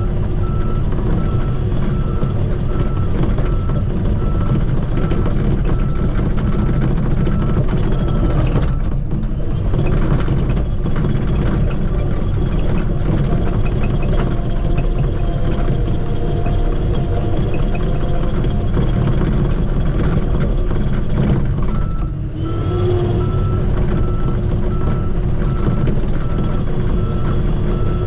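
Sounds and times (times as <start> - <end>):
bulldozer diesel engine running: 0.0 - 28.0
reversing alarm beeping: 21.7 - 28.0.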